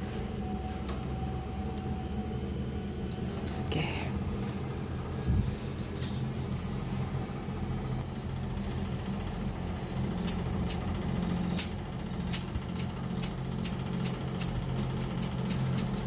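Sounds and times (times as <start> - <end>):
air conditioner unit humming: 0.0 - 16.0.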